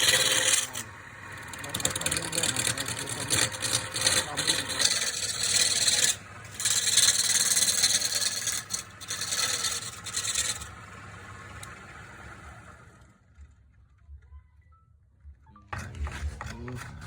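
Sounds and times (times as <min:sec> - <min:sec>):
tool scraping wood on lathe: 0:00.0 - 0:12.4.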